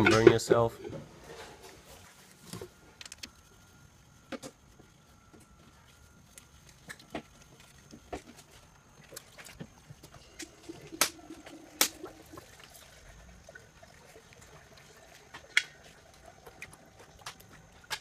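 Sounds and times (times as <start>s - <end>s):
oil trickling into pan: 9.6s - 17.9s.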